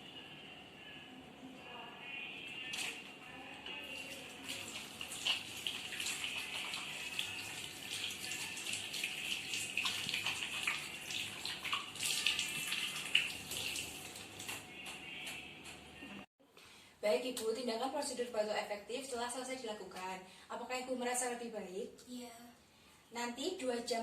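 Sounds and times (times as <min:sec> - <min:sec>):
water running and splashing: 0:03.8 - 0:14.7.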